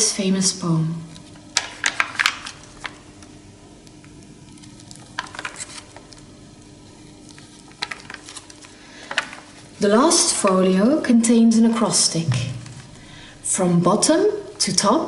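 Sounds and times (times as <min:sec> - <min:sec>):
faint steady hum: 0:00.0 - 0:15.0
manuscript pages rustling: 0:04.6 - 0:06.2, 0:07.2 - 0:09.7.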